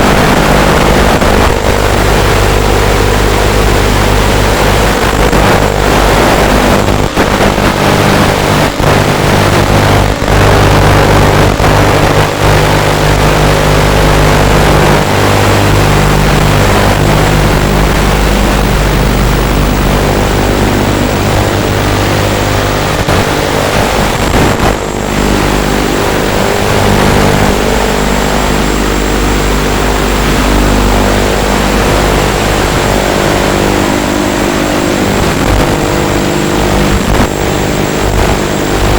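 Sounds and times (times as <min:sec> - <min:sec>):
heavy rushing noise: 0:00.0 - 0:38.9.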